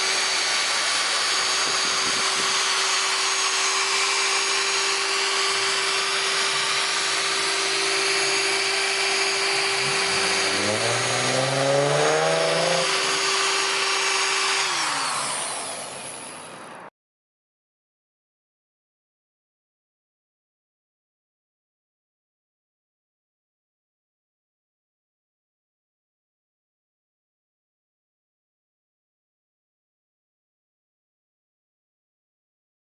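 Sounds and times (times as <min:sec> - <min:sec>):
electric polisher whining: 0:00.0 - 0:16.9.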